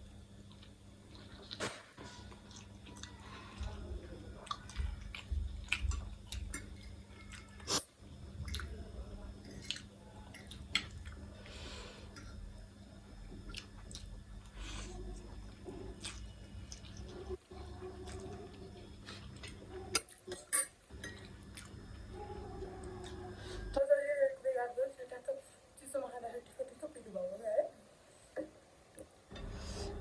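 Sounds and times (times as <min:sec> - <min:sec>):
steady low hum: 0:00.0 - 0:30.0
wet chewing: 0:00.5 - 0:08.8, 0:13.3 - 0:20.4.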